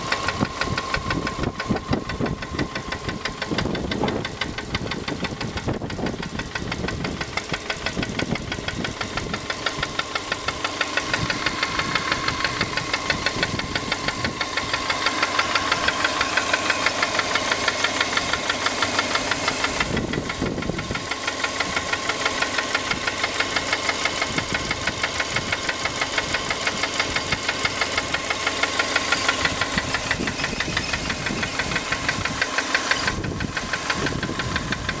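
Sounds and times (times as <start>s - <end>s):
car engine with rhythmic knock: 0.0s - 35.0s.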